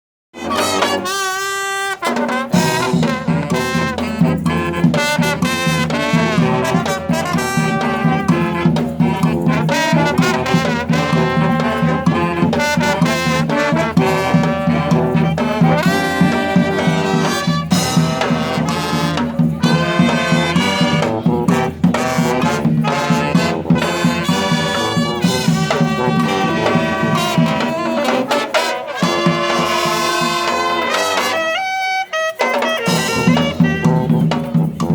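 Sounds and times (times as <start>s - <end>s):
brass band playing: 0.4s - 34.9s
percussion beat: 0.4s - 34.9s.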